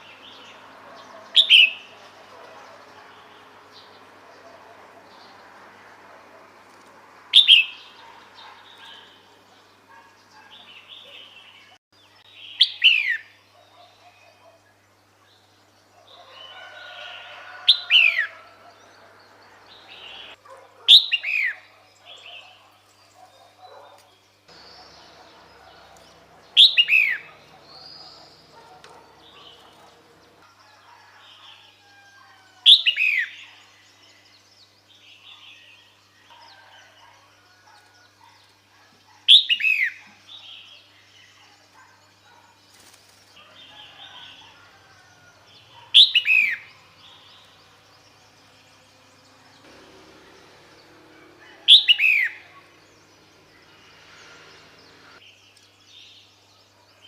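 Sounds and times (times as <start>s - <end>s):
bulbul calling: 0.9s - 3.4s, 24.5s - 30.4s, 51.4s - 53.5s.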